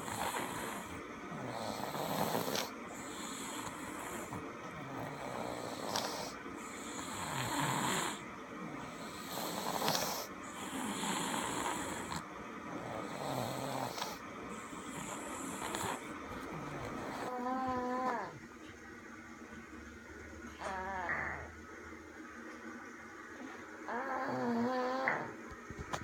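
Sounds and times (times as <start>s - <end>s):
man snoring: 0.0s - 18.3s.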